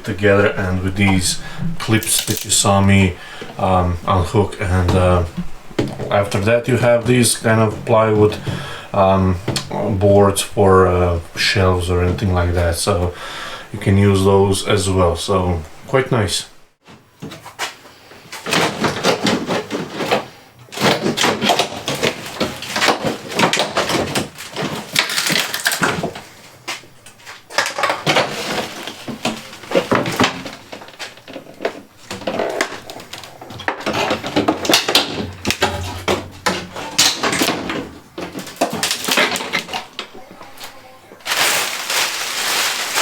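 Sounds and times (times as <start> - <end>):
wooden boards knocking and scraping: 0.0 - 11.0, 18.4 - 26.2, 27.4 - 40.2.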